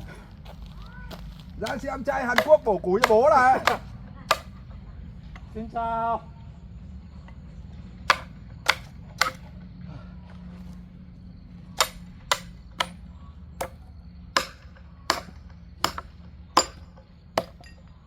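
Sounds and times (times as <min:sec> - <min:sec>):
hammer striking steel wedge: 0:01.6 - 0:04.6, 0:08.1 - 0:09.5, 0:11.8 - 0:13.0, 0:13.6 - 0:13.8, 0:14.4 - 0:17.8.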